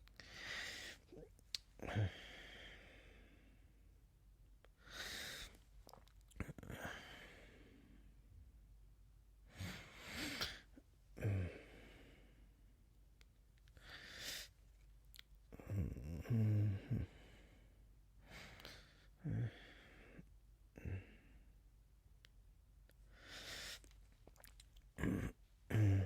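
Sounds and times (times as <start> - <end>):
man groaning: 25.0 - 26.0
man grunting: 25.0 - 26.0
man sighing and exhaling: 25.0 - 26.0.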